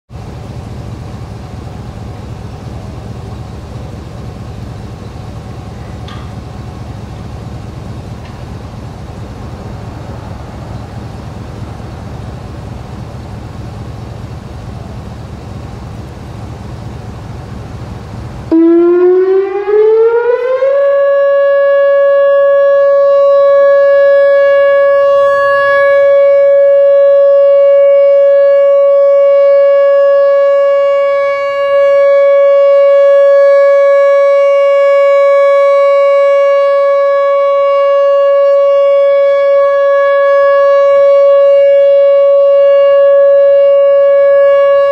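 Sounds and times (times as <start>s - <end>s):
steady rushing background noise: 0.1s - 18.5s
warning siren rising to steady tone: 6.4s - 44.9s.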